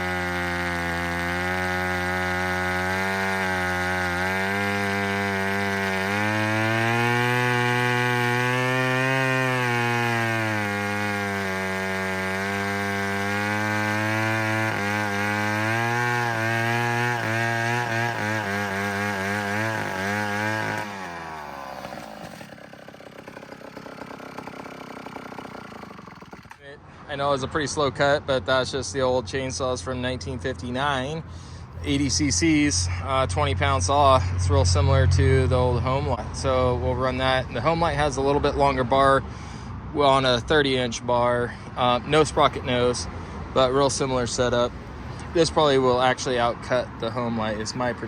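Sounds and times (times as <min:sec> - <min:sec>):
chainsaw cutting log: 0:00.0 - 0:26.6, 0:36.4 - 0:38.4, 0:41.8 - 0:48.0.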